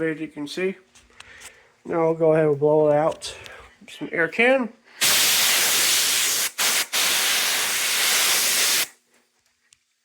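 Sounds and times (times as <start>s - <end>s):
compressed air spraying hiss: 5.0s - 9.0s.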